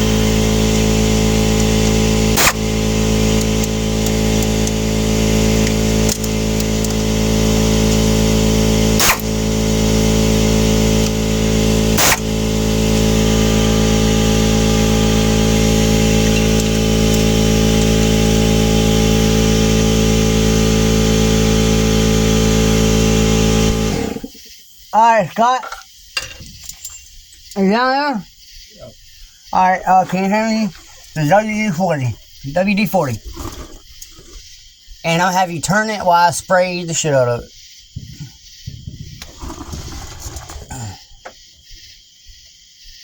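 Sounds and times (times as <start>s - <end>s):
steady mechanical hum: 0.0s - 34.4s
sharp clicks: 1.5s - 7.0s, 8.9s - 9.5s, 11.9s - 12.4s.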